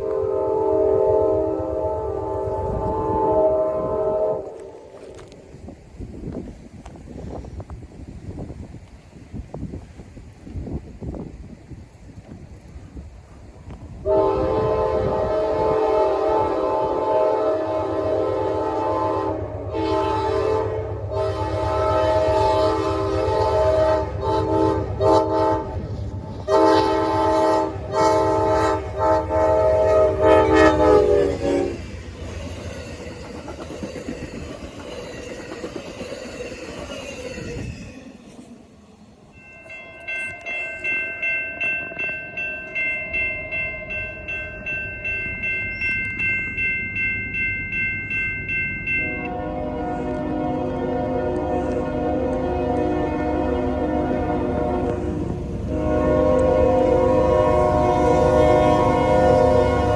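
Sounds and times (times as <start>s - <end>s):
locomotive air horn: 0.0s - 5.4s, 14.0s - 32.4s, 49.1s - 59.9s
train rumbling: 0.0s - 59.9s
train rushing past: 0.0s - 59.9s
railroad warning bell ringing: 14.1s - 37.7s, 39.2s - 59.9s.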